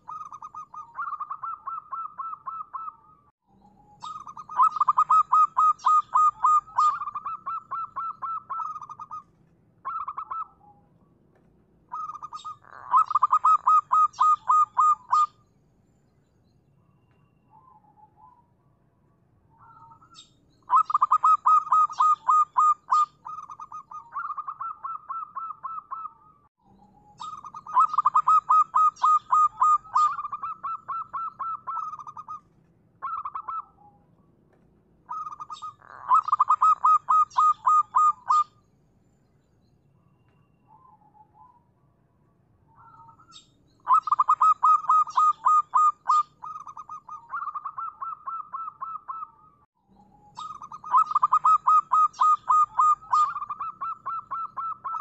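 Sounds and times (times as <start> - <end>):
dove cooing: 0.0 - 3.2, 3.8 - 10.8, 11.9 - 15.4, 19.6 - 26.3, 27.1 - 34.0, 35.1 - 38.6, 42.8 - 49.5, 50.2 - 55.0.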